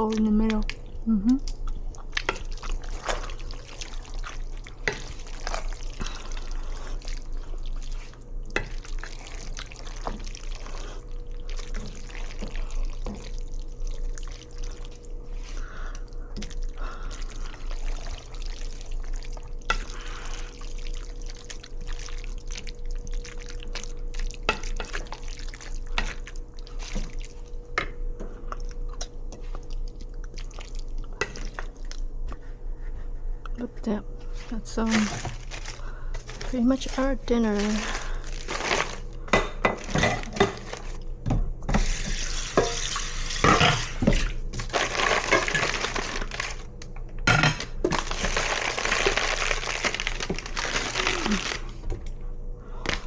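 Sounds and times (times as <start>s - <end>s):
running and dripping water: 0.0s - 27.8s, 34.7s - 46.8s
steady hum: 22.2s - 53.0s
dishes and utensils clinking: 37.6s - 41.0s, 42.5s - 46.5s, 47.3s - 47.8s.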